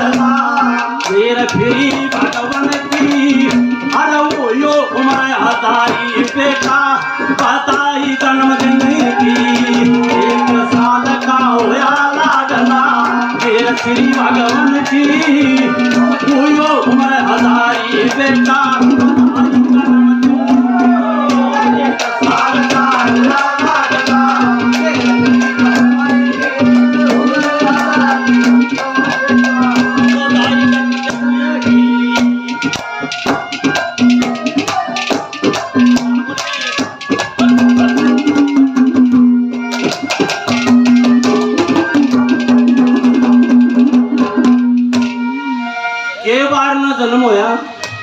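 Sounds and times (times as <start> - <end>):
rattling percussion: 0.0 - 45.8
rapid drum strokes: 7.4 - 45.6
wavering melody line: 18.7 - 46.4
held drone note: 40.5 - 46.3.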